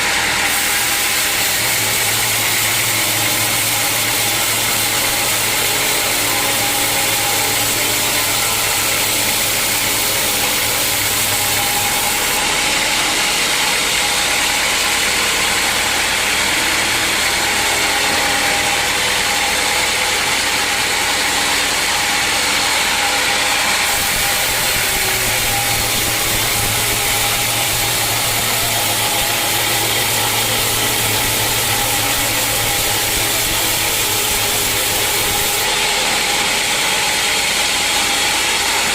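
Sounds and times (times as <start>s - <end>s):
loud even machinery hiss: 0.0s - 16.4s, 23.7s - 36.9s
engine drone: 0.0s - 38.9s.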